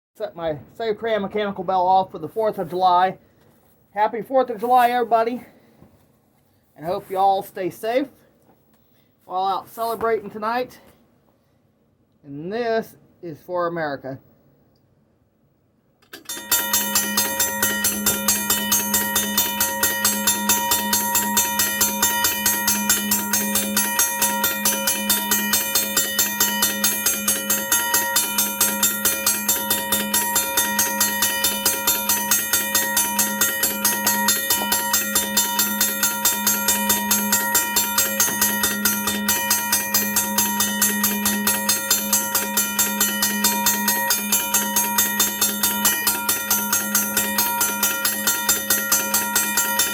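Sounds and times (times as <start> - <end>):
railroad crossing bell ringing: 16.3 - 49.9.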